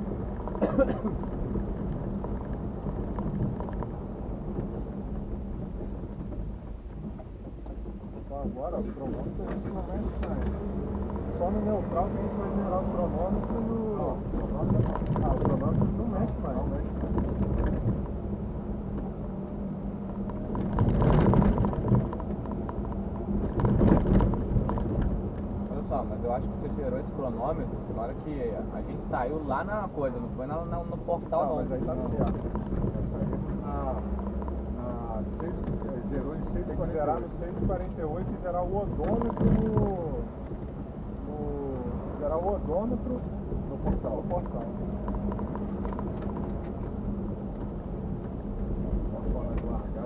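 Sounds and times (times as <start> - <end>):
vehicle knocks and rattles: 0.0 - 12.1, 12.8 - 28.2, 30.5 - 41.1, 42.3 - 50.0
car engine drone: 0.0 - 50.0
tyre and road rumble: 0.0 - 50.0.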